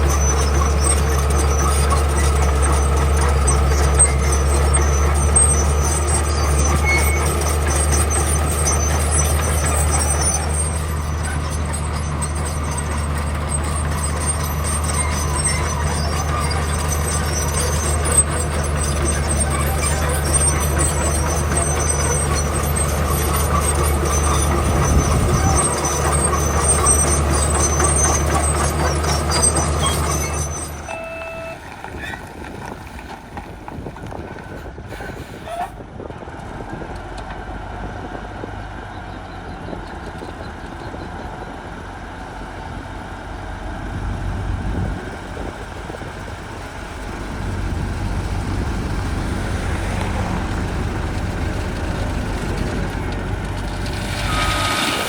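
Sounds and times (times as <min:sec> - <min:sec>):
diesel machinery engine running: 0:00.0 - 0:55.0
short tones: 0:23.9 - 0:32.2.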